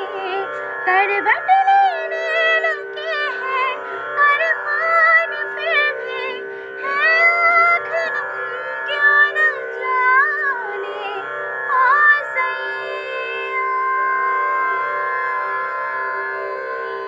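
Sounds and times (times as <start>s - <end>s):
woman singing ornamented melody: 0.0s - 17.0s.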